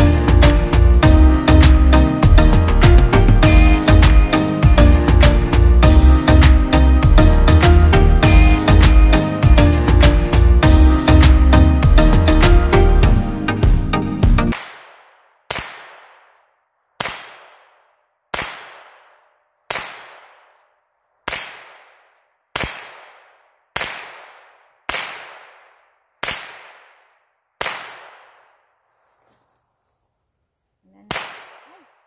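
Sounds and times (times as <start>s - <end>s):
rifle shots: 17.0s - 28.7s, 31.1s - 32.0s.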